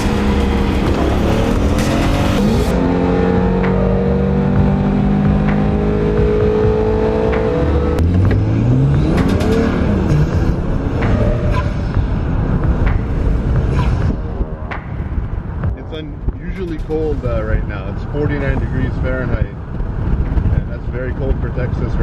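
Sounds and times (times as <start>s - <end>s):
car engine accelerating hard: 0.0s - 15.6s.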